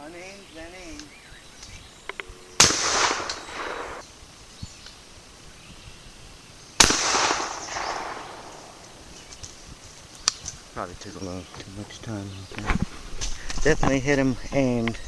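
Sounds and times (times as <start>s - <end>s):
shotgun shots: 2.6s - 4.0s, 6.8s - 9.0s.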